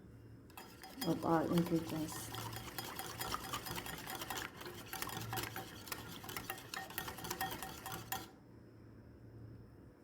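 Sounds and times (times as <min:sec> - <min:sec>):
whisk clicking against bowl: 0:00.5 - 0:08.3.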